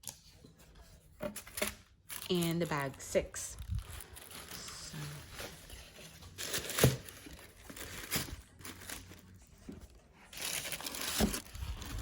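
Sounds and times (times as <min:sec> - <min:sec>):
packaging crinkling and rustling: 0:03.5 - 0:12.0.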